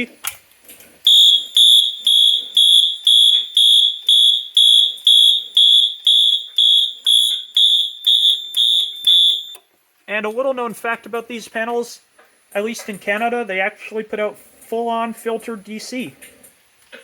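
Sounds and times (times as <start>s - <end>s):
fire alarm horns pulsing: 1.1s - 9.6s.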